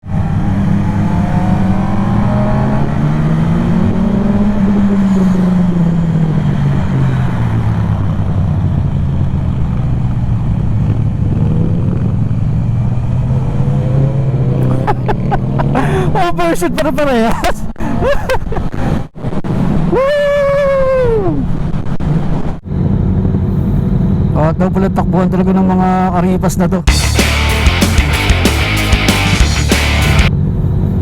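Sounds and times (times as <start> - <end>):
motorcycle engine revving: 0.0 - 15.8, 26.9 - 30.3.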